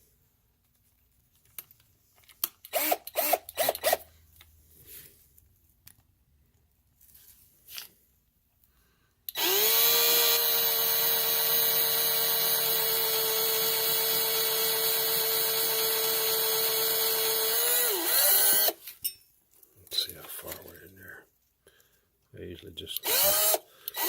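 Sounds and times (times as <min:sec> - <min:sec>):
electric drill whining: 0:02.7 - 0:04.1, 0:09.3 - 0:18.8, 0:23.0 - 0:24.0.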